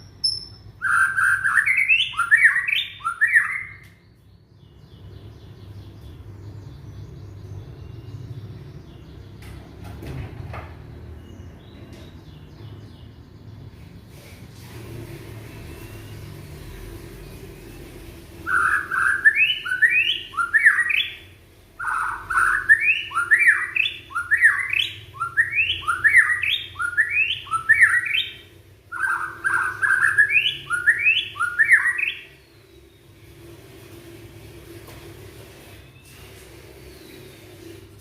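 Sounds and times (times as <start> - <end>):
bird singing whistles: 0.0 - 4.0, 18.4 - 32.4.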